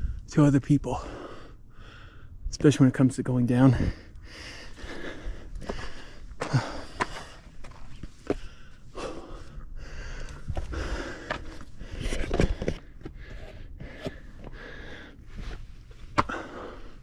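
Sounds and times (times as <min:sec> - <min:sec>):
person breathing hard: 0:01.0 - 0:02.4, 0:03.7 - 0:17.0.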